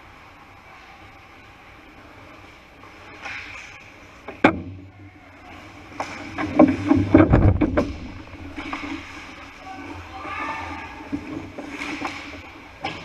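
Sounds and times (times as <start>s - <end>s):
steady low hum: 0.0s - 10.1s
knocks and heavy thuds: 6.2s - 9.0s.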